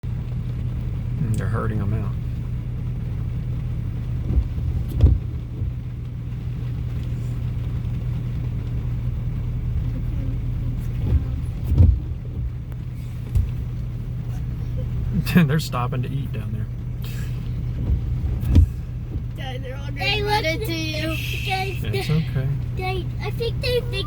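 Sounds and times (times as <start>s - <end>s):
car engine hum: 0.0s - 24.0s
dull thumps: 3.7s - 6.3s, 10.8s - 14.0s, 17.3s - 19.6s.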